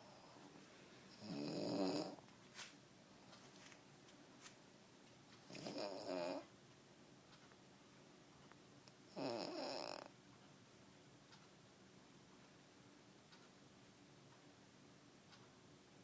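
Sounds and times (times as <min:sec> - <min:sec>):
man snoring: 0:01.2 - 0:02.2, 0:05.7 - 0:06.4, 0:09.2 - 0:10.1.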